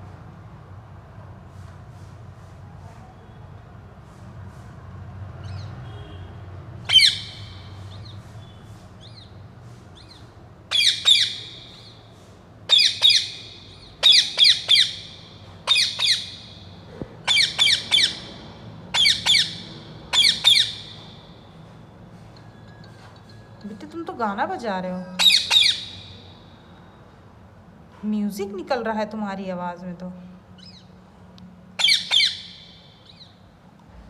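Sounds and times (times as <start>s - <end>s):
parrot squawking: 6.9s - 7.6s, 10.0s - 11.9s, 12.7s - 21.0s, 25.2s - 26.3s, 31.8s - 33.3s.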